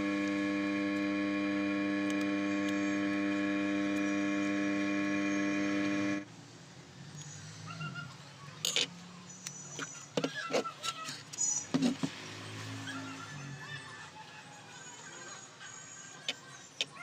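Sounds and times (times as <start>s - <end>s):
electrical hum: 0.0s - 6.3s.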